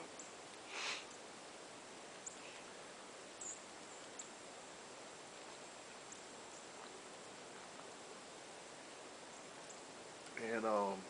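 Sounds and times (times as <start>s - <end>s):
faint outdoor hiss: 0.0s - 11.0s
breathy rustle: 0.6s - 1.1s
faint clicks: 2.2s - 2.6s, 9.7s - 10.4s.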